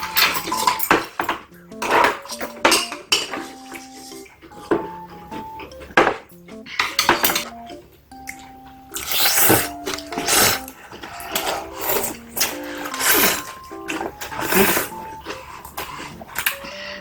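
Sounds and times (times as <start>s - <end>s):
simple background melody: 0.0s - 17.0s
utensils clinking on dishes: 0.0s - 17.0s
chewing and slurping: 3.4s - 5.8s, 8.3s - 17.0s.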